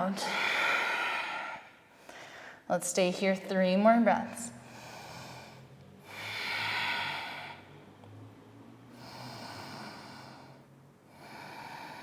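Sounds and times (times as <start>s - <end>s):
woman breathing deeply: 0.0s - 2.7s, 4.6s - 8.0s, 8.9s - 12.0s.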